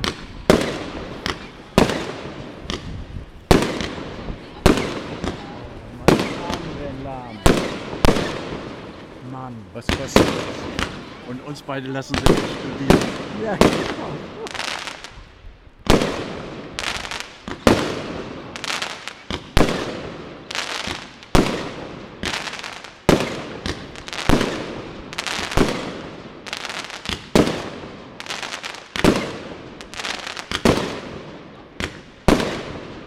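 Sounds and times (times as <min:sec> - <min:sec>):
fireworks bangs with ringing echo: 0:00.0 - 0:09.1, 0:09.9 - 0:11.3, 0:12.1 - 0:15.1, 0:15.9 - 0:26.2, 0:28.9 - 0:33.0.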